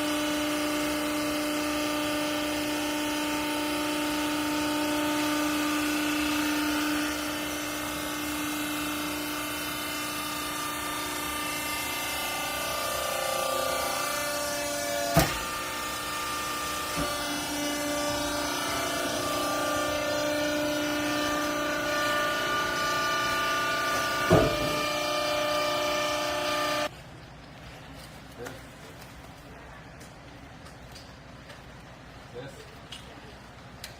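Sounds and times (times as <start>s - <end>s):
hydraulic baler motor humming: 0.0s - 26.9s
sharp knocks: 24.2s - 24.9s.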